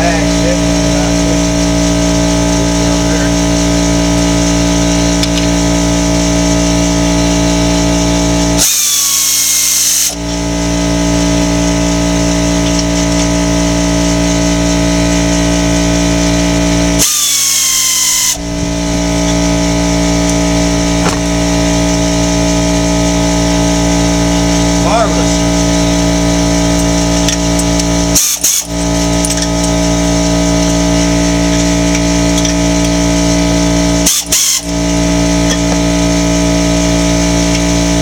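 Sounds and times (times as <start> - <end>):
power tool hissing whir: 0.0 - 38.0
steady machine hum: 0.0 - 38.0.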